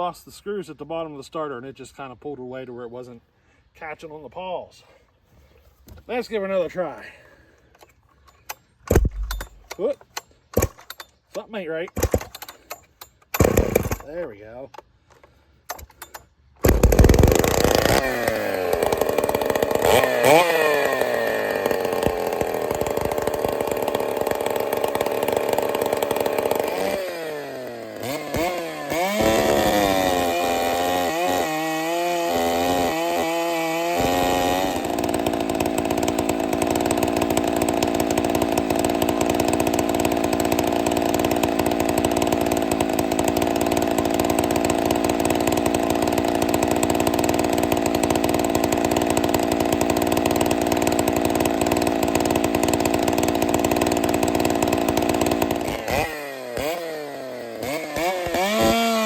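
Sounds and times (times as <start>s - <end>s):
chainsaw engine revving: 13.3s - 14.2s, 16.6s - 59.0s.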